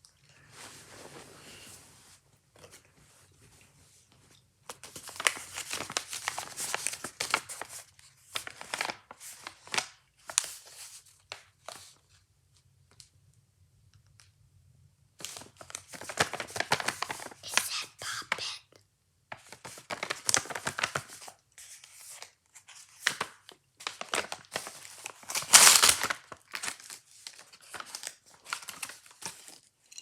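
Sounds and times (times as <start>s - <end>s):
plastic packaging crinkling and tearing: 4.7s - 11.8s, 15.2s - 18.6s, 19.4s - 29.7s.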